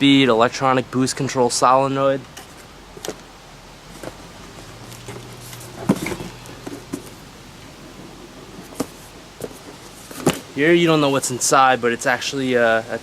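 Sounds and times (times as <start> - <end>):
packaging knocks and rustles: 3.9 - 7.2.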